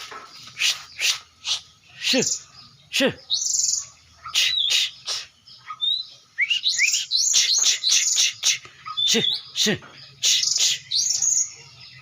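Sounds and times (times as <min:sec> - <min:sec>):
songbird chirping and whistling: 0:00.0 - 0:12.0.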